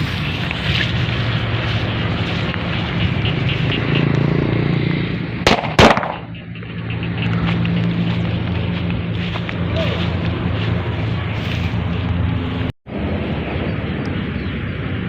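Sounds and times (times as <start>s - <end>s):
firecracker bangs: 5.4s - 6.3s.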